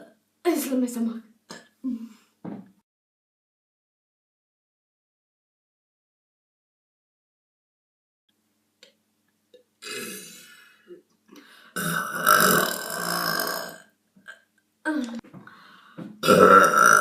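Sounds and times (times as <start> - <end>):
person burping: 9.8 - 11.0, 11.8 - 15.2, 16.2 - 17.0.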